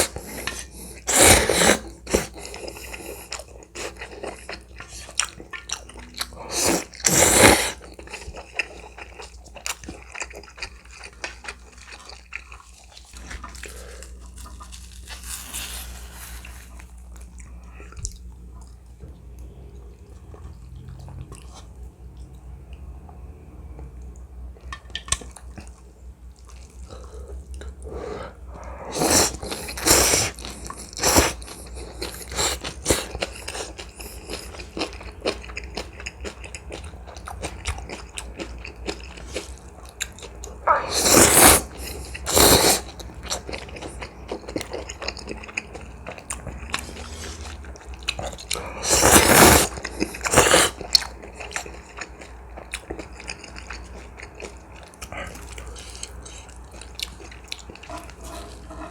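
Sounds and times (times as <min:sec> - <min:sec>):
slurping noodles: 0:00.0 - 0:05.2, 0:06.3 - 0:07.9, 0:15.1 - 0:16.9, 0:27.9 - 0:34.8, 0:40.6 - 0:43.4, 0:48.2 - 0:50.9
chewing and lip smacking: 0:16.3 - 0:23.2, 0:24.6 - 0:28.0, 0:28.6 - 0:58.9.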